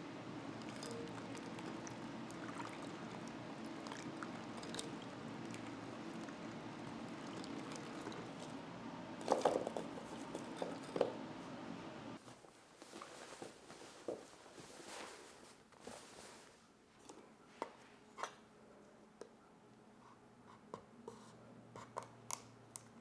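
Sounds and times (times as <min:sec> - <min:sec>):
water pouring in a sink: 0:00.6 - 0:08.6.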